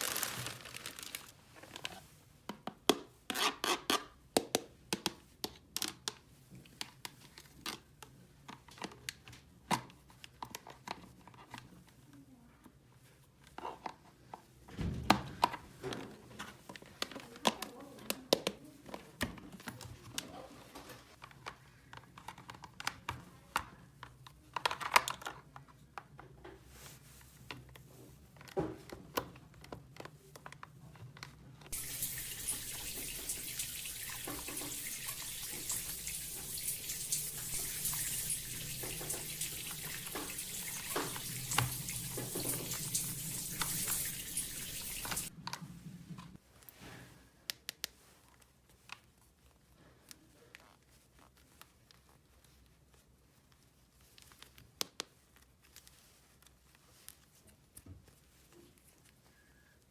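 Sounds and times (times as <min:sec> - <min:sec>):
running water: 0:00.0 - 0:01.3, 0:31.7 - 0:45.4.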